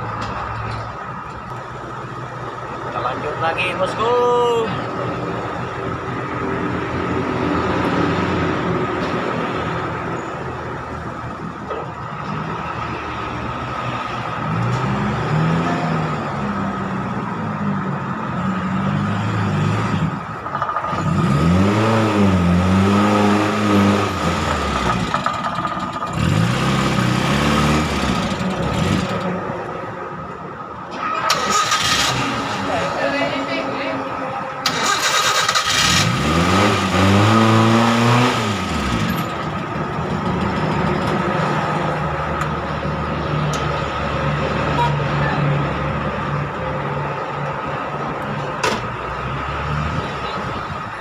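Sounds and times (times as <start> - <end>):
motor engines revving: 10.8 - 30.0, 30.9 - 51.0.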